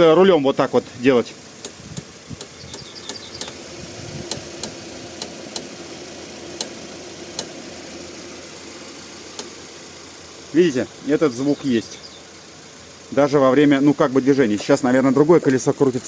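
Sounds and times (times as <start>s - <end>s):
car engine running: 0.0s - 16.0s
suspension knocking: 1.6s - 5.8s.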